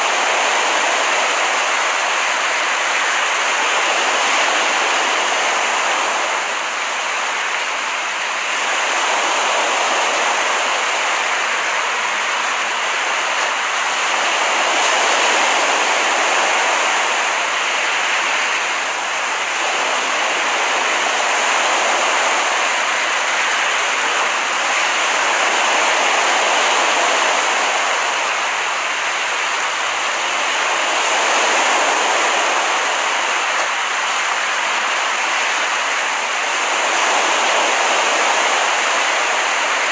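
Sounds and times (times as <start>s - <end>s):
ocean surf washing onto beach: 0.0s - 39.9s.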